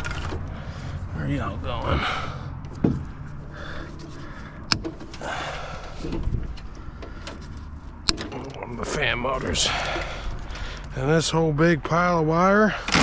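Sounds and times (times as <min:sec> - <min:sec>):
wiring and metal parts rustling: 0:00.0 - 0:01.0, 0:02.6 - 0:11.0, 0:12.8 - 0:13.0.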